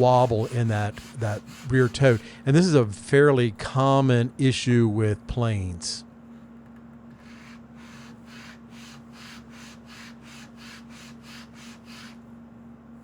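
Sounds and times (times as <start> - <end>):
wood rubbing on sandpaper: 0.0 - 2.4, 7.2 - 12.2
faint steady hum: 0.0 - 13.0.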